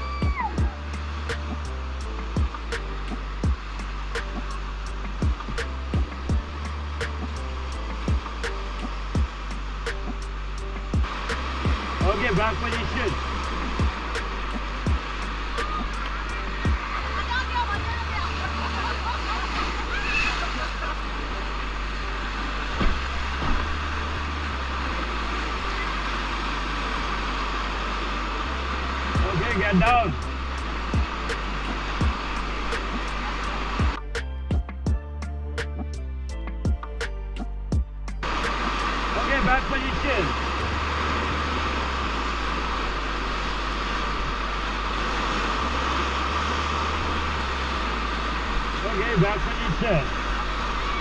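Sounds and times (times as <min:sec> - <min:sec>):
whitewater rushing: 0:00.0 - 0:34.0, 0:38.2 - 0:51.0.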